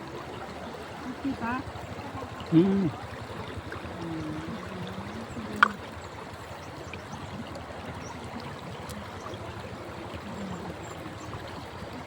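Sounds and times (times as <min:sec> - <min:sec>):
faint voice: 0:00.0 - 0:05.8, 0:08.1 - 0:11.7
river water flowing: 0:00.0 - 0:12.0.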